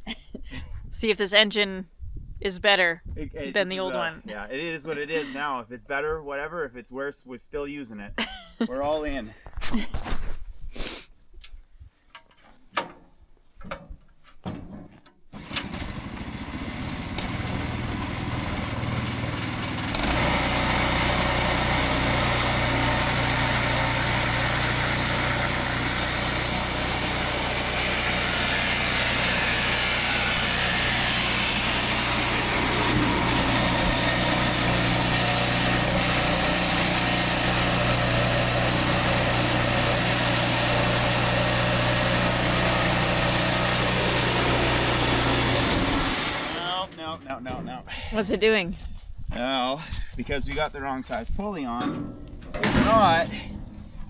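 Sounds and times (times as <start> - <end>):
sawmill engine running: 15.4 - 47.0.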